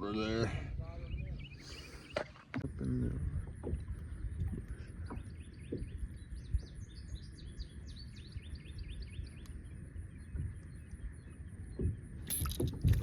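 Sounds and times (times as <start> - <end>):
songbird singing: 0.8 - 13.0.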